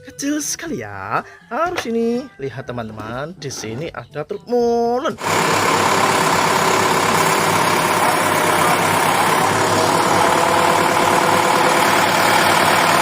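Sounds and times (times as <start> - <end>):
truck engine idling: 5.2 - 13.0.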